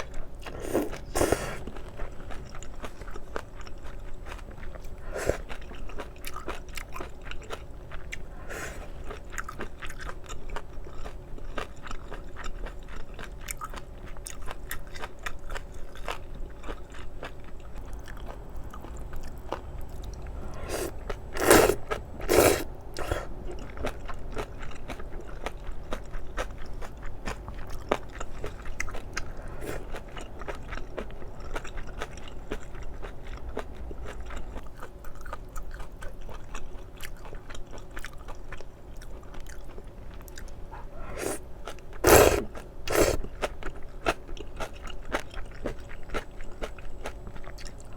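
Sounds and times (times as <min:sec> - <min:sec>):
person chewing wet food: 0:00.0 - 0:47.9
louder mouth sounds: 0:20.3 - 0:23.3, 0:40.7 - 0:43.3.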